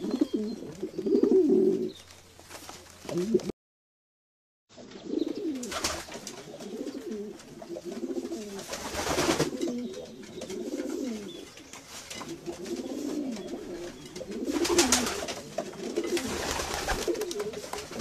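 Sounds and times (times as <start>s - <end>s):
pigeons cooing: 0.0s - 2.0s, 3.0s - 3.5s, 4.8s - 11.6s, 12.2s - 18.0s.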